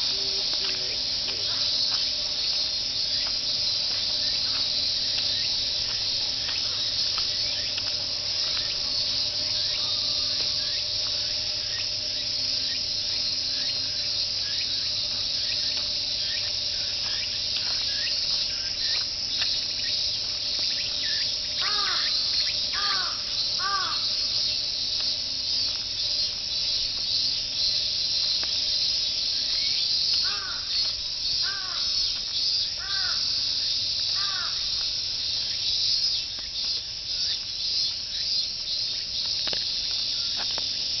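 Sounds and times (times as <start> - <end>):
cicadas buzzing: 0.0 - 41.0
crow cawing: 21.6 - 24.2, 30.2 - 30.8, 31.4 - 32.0, 32.8 - 33.4, 34.2 - 34.7.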